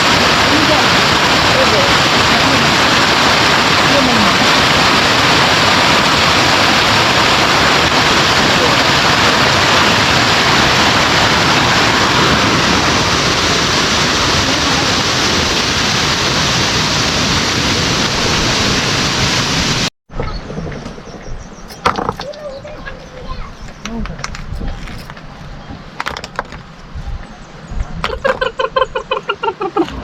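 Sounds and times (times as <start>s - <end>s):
loud steady rushing noise: 0.0s - 19.9s
scattered clicks and knocks: 26.0s - 26.6s.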